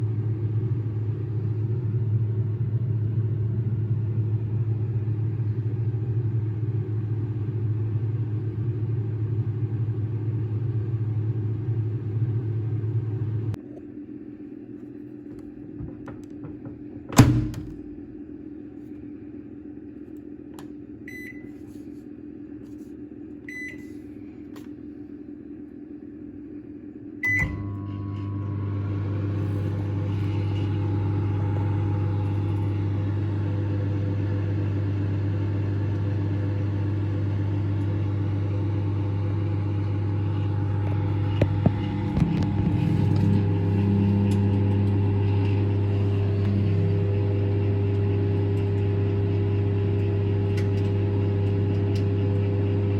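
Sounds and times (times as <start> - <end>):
microwave oven humming: 0.0 - 52.9
microwave keypad beeps: 21.1 - 21.5, 23.5 - 23.9, 27.2 - 28.5.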